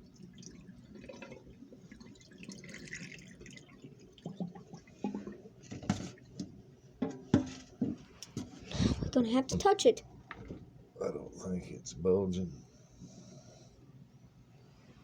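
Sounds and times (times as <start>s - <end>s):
water dripping and trickling: 0.0s - 6.5s.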